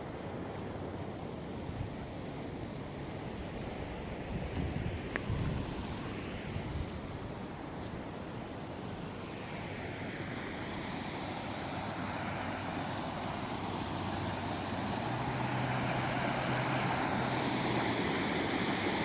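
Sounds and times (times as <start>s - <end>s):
low engine hum: 0.0s - 19.0s
floodwater rushing: 2.0s - 19.0s.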